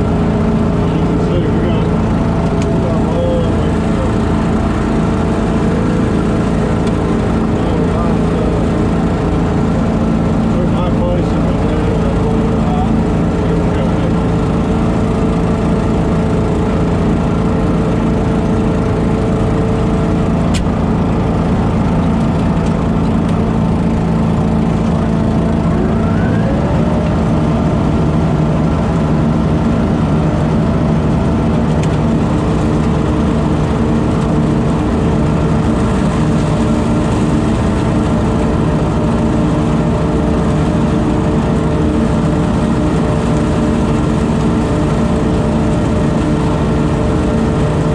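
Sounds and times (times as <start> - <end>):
leaf vacuum engine running: 0.0 - 47.9
faint rising whine: 24.6 - 31.1.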